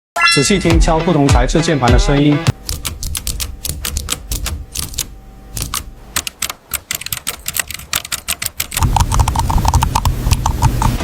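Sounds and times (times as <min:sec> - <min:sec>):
background music with low beat: 0:00.3 - 0:05.8
keyboard keystrokes clacking: 0:02.6 - 0:11.0.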